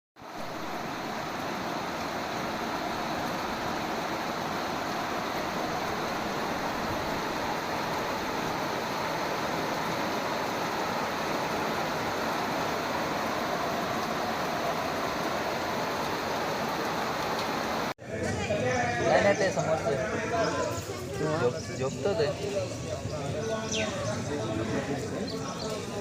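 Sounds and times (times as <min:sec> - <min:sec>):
floodwater rushing: 0:00.2 - 0:18.0.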